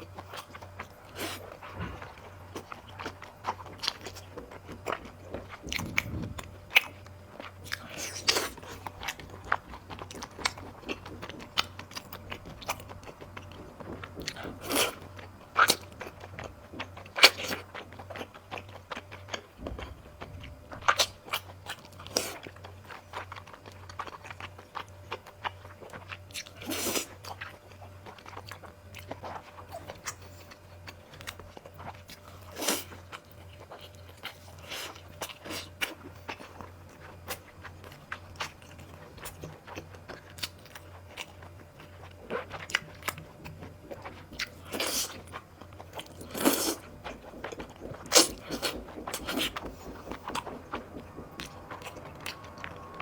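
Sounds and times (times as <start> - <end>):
chewing with wet mouth smacks: 0.0 - 53.0
steady low hum: 0.0 - 53.0.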